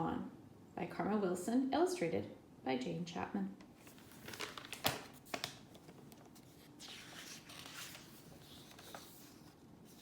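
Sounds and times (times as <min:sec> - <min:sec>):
paper pages turning: 0:03.8 - 0:10.0.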